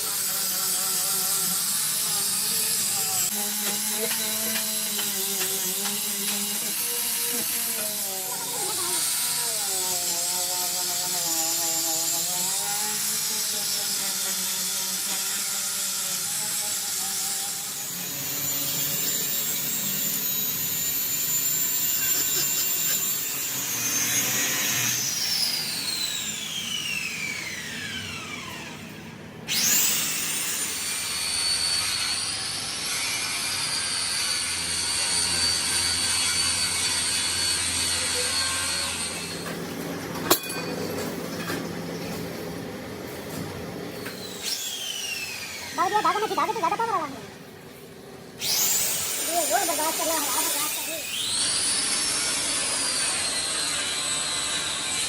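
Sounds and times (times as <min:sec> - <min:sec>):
power tool whining: 0:00.0 - 0:55.0.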